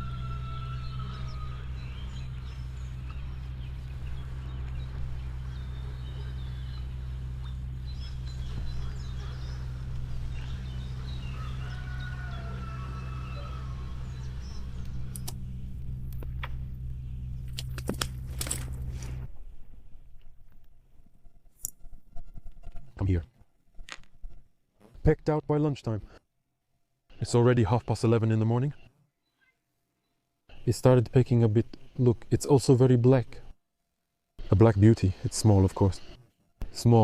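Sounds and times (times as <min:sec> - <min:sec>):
small birds chirping: 0:00.0 - 0:19.2, 0:27.2 - 0:33.5
steady low hum: 0:00.0 - 0:23.3
sharp clicks: 0:14.8 - 0:15.5.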